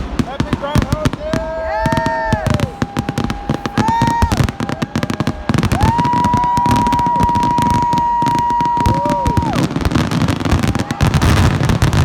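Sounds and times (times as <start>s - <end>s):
crowd: 0.0s - 12.0s
fireworks popping and crackling: 0.0s - 12.0s.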